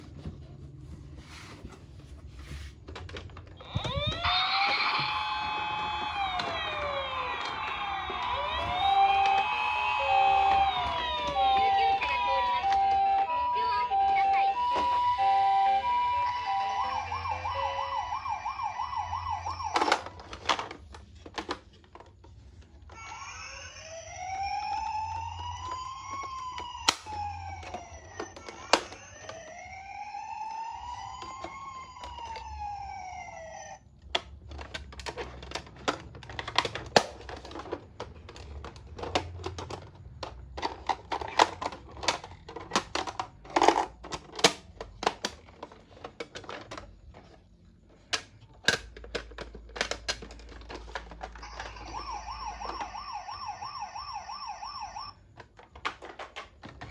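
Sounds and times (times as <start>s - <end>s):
toy ambulance siren: 3.6s - 20.7s, 22.9s - 33.9s, 49.8s - 55.4s
plastic toy cars rattling: 16.2s - 33.0s, 34.0s - 56.9s.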